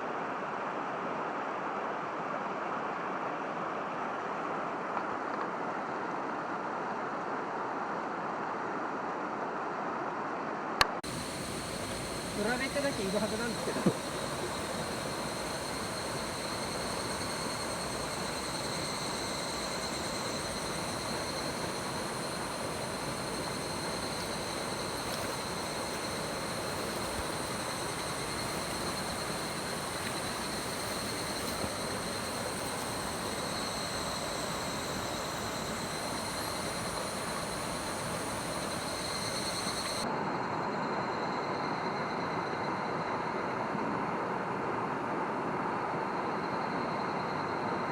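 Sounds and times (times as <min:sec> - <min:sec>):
stream water flowing: 0:11.0 - 0:40.0
thin high tone: 0:11.1 - 0:40.0.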